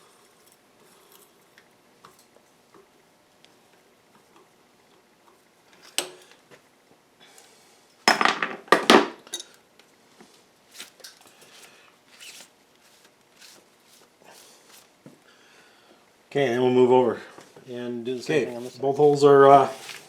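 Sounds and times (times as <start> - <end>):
tools clinking and clattering: 8.1 - 9.6.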